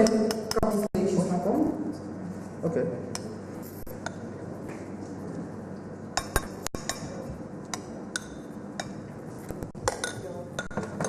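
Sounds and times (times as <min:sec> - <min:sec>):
dishes and utensils clinking: 0:06.2 - 0:11.0.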